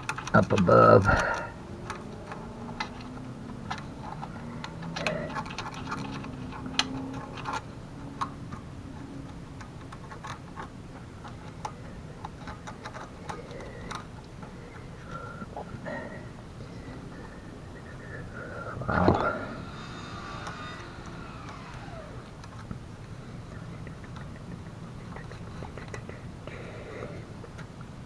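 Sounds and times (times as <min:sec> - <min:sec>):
metal pick clicking and scraping: 0:00.0 - 0:14.9.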